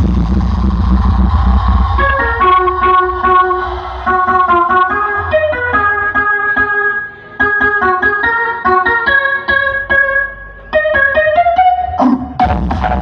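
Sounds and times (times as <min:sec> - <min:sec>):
low bass: 0:00.0 - 0:06.7
electronic keyboard melody: 0:02.0 - 0:13.0.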